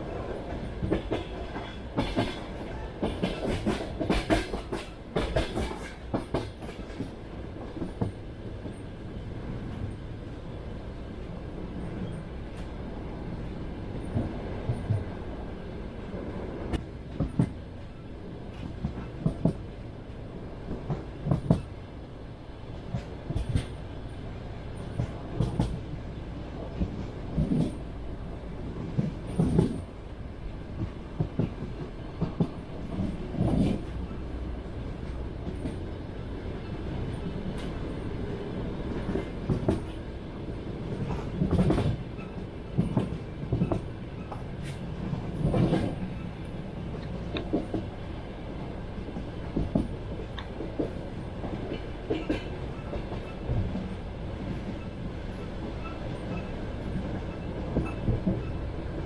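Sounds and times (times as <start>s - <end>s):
train wheels clattering over rail joints: 0.1s - 8.9s, 16.7s - 17.6s, 18.5s - 19.8s, 20.7s - 21.8s, 22.8s - 23.8s, 24.8s - 26.0s, 26.7s - 28.0s, 28.8s - 30.0s, 30.8s - 34.2s, 38.9s - 40.1s, 40.8s - 48.0s, 49.0s - 58.6s.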